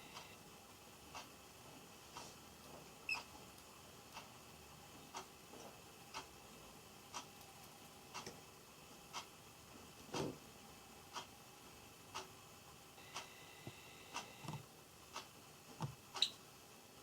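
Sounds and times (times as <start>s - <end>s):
clock ticking: 0.0s - 0.4s, 6.1s - 6.3s, 11.1s - 11.3s, 13.0s - 15.3s.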